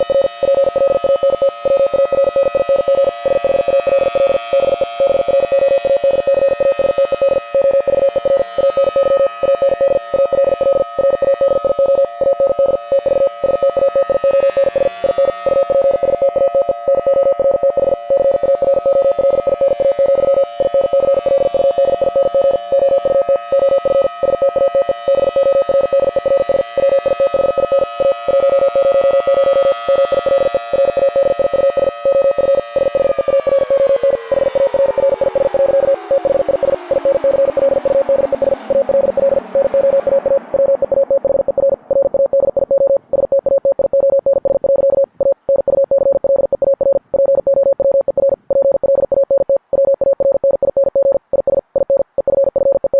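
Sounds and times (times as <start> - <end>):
two-note warning siren: 0.0 - 42.0.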